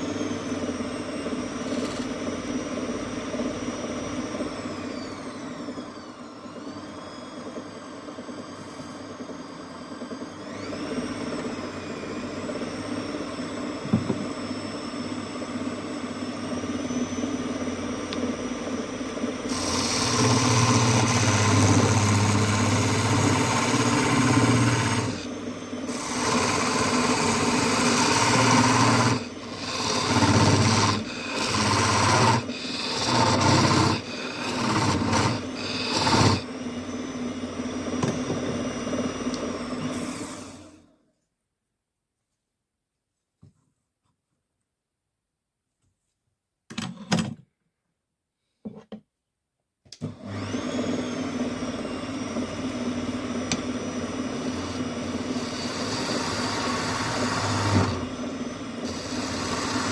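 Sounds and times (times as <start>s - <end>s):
wood lathe motor whine: 0.0s - 40.9s, 50.1s - 59.9s
tool scraping spinning wood: 1.4s - 2.2s, 19.4s - 36.5s, 53.4s - 59.9s.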